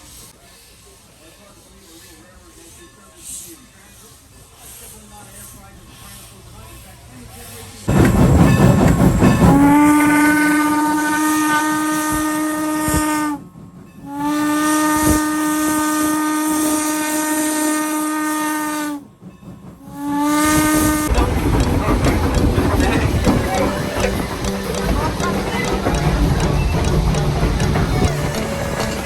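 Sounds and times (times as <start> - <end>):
locomotive steam hiss: 0.0 - 29.0
steam whistle blasts: 7.9 - 19.0, 19.9 - 21.2.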